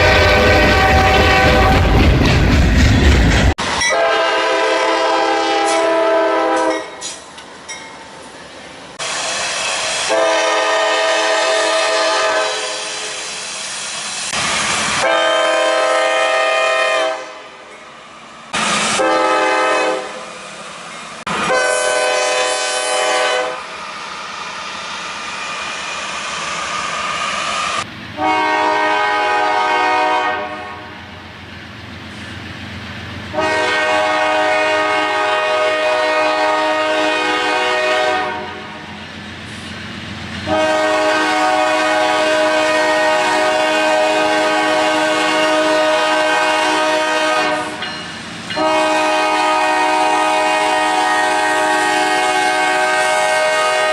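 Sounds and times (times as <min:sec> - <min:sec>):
locomotive air horn: 0:00.0 - 0:02.0, 0:03.8 - 0:07.0, 0:09.8 - 0:13.4, 0:14.3 - 0:17.6, 0:18.6 - 0:20.3, 0:21.3 - 0:23.7, 0:28.2 - 0:31.2, 0:33.3 - 0:38.9, 0:40.4 - 0:47.8, 0:48.6 - 0:53.9
train running noise: 0:00.0 - 0:53.9.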